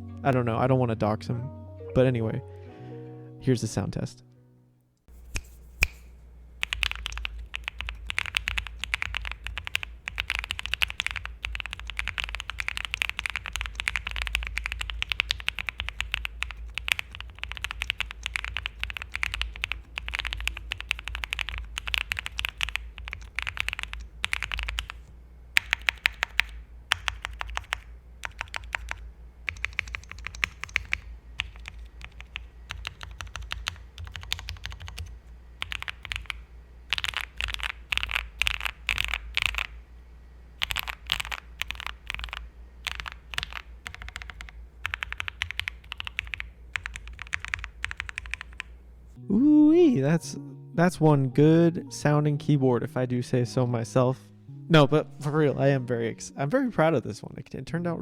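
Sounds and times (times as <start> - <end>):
keyboard typing: 6.6 - 39.8, 40.6 - 48.8.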